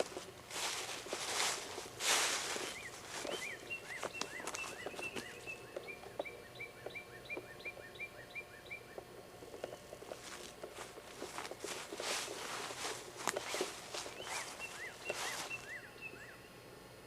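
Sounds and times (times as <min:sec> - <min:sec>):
loud rustle: 0:00.0 - 0:05.3, 0:10.0 - 0:15.6
bird chirping: 0:00.0 - 0:16.6
faint clicks and knocks: 0:08.9 - 0:14.2.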